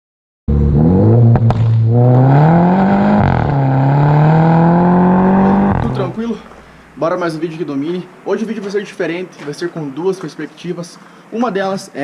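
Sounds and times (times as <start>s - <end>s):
car engine accelerating: 0.5s - 6.7s
exhaust cracks: 0.5s - 6.8s.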